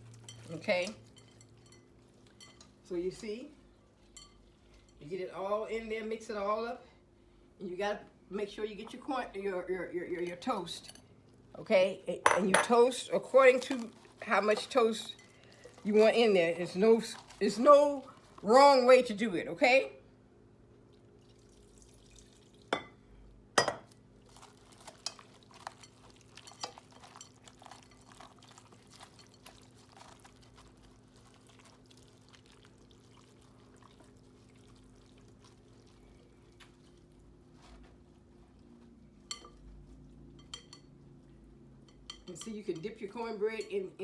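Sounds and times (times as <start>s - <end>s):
soft wet mixing by hand: 0.0s - 19.8s, 20.6s - 44.0s
crockery clinking: 12.2s - 12.8s, 23.6s - 23.9s.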